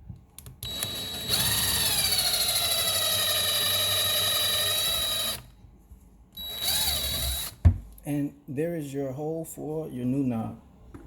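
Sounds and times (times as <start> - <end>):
power drill motor whining: 0.6 - 5.5, 6.4 - 7.6.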